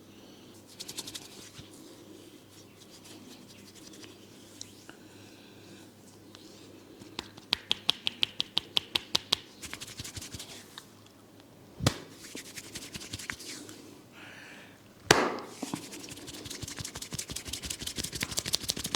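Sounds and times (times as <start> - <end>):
loud cracks: 15.1 - 15.5.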